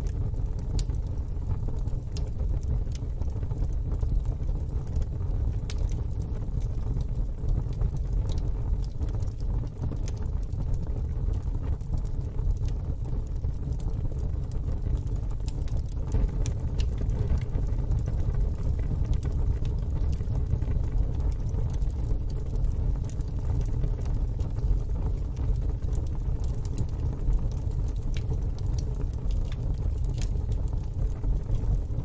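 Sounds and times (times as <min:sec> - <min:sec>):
fire crackling and popping: 0:00.0 - 0:32.0
steady low rumble: 0:14.7 - 0:32.0.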